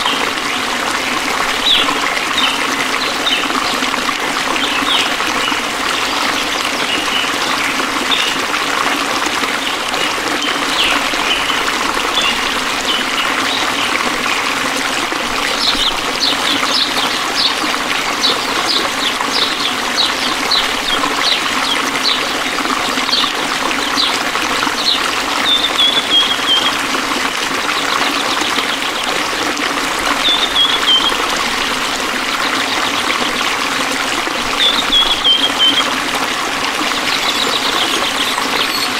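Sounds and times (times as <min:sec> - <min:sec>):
stream water trickling: 0:00.0 - 0:38.9
birds chirping: 0:23.9 - 0:26.9, 0:30.1 - 0:31.7, 0:34.6 - 0:38.9.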